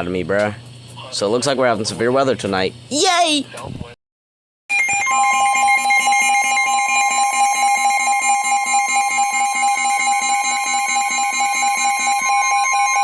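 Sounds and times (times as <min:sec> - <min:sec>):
two-note alert tone: 0:04.7 - 0:13.0.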